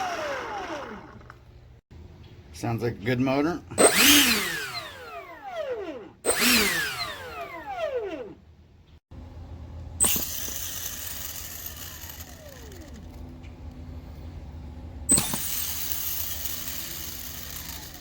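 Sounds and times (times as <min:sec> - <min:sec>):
motor running with rushing sound: 0:00.0 - 0:01.6, 0:03.8 - 0:08.4, 0:09.1 - 0:18.0.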